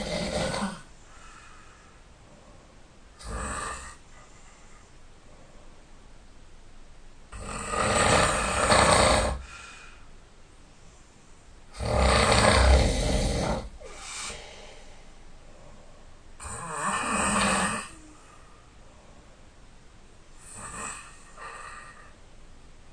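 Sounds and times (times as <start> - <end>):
person snoring loudly: 0.0 - 0.9, 3.2 - 4.0, 7.3 - 9.5, 11.7 - 14.4, 16.4 - 18.2, 20.4 - 22.2
faint breath: 0.9 - 3.0, 3.8 - 6.1, 9.4 - 11.5, 13.8 - 16.2, 17.9 - 19.7, 20.4 - 22.3.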